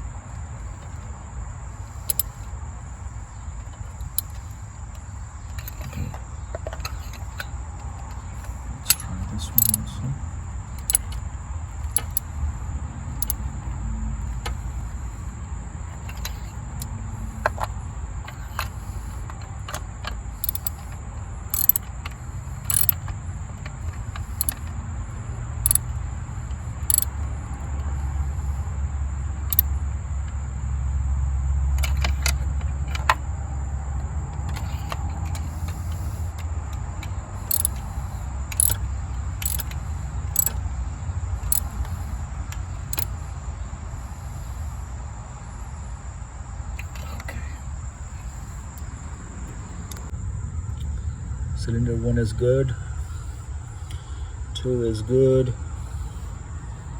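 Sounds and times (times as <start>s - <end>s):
ratchet and socket clicking: 1.9s - 2.5s, 3.6s - 9.9s, 10.8s - 12.5s, 13.1s - 15.2s, 15.9s - 24.8s, 25.6s - 28.0s, 29.4s - 29.7s, 31.8s - 33.2s, 34.4s - 40.6s, 41.4s - 43.2s.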